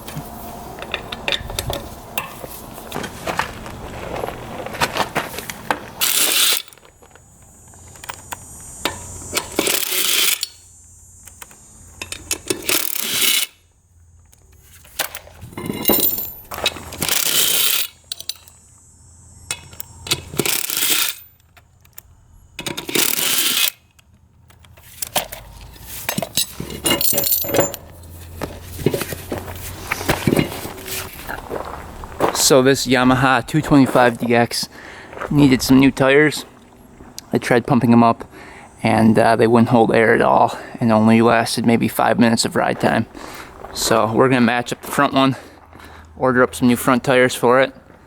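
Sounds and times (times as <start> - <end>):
metal clinking and clattering: 14.9 - 18.6, 26.0 - 28.1.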